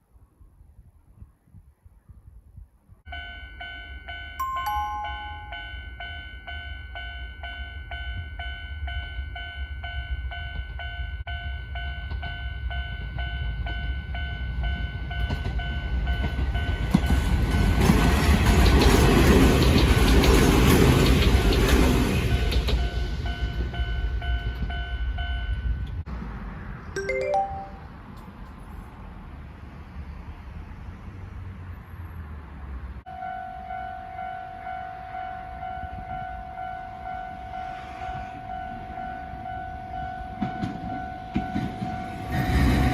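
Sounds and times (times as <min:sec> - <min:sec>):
level crossing warning bell: 0:03.1 - 0:17.4, 0:22.3 - 0:25.8, 0:27.0 - 0:28.0, 0:33.1 - 0:37.7, 0:38.5 - 0:42.8
train passing: 0:03.1 - 0:42.9.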